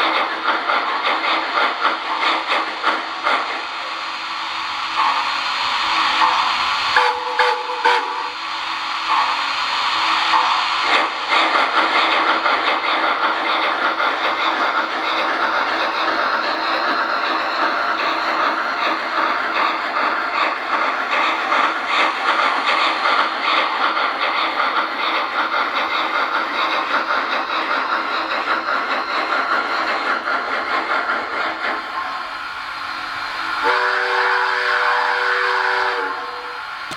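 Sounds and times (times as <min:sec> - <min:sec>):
model train steam chuffing: 0:00.0 - 0:36.9
multi-tone steam whistle: 0:05.0 - 0:08.6, 0:31.9 - 0:36.9.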